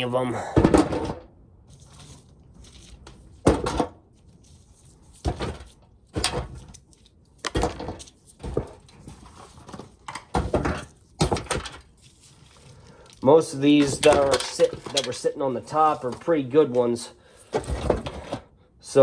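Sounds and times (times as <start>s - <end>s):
corn ears knocking into pail: 13.7s - 15.2s.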